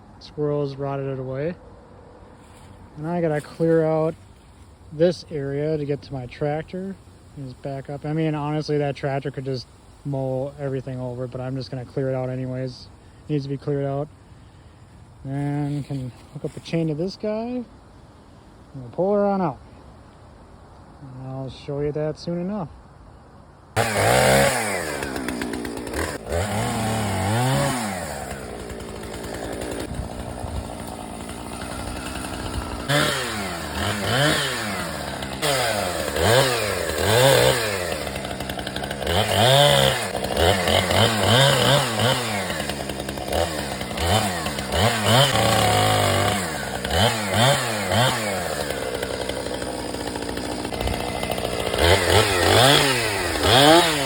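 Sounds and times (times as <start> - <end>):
chainsaw revving: 2.5 - 9.6, 23.8 - 54.0.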